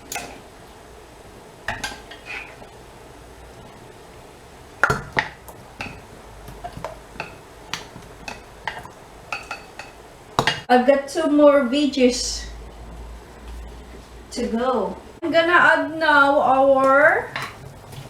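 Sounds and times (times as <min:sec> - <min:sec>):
utensil knocking against cooking pot: 0:04.8 - 0:10.7.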